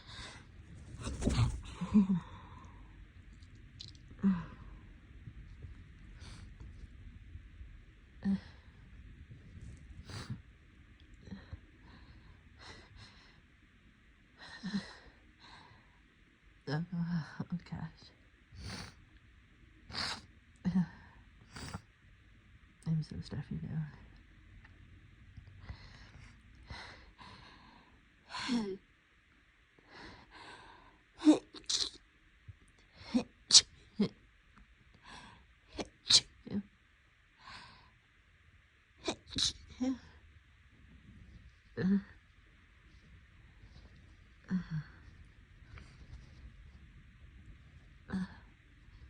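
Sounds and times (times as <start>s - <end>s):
woman sneezing: 31.2s - 32.0s, 33.5s - 33.7s, 35.8s - 36.4s, 39.0s - 39.7s.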